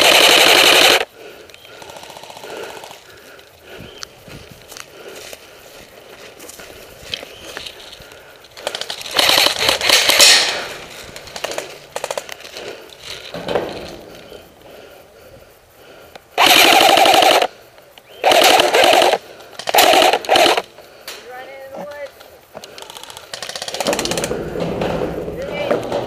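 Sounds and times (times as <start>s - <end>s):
airsoft rifles firing bursts: 0.0s - 1.1s, 8.6s - 10.6s, 11.2s - 12.3s, 16.4s - 20.7s, 22.8s - 24.5s.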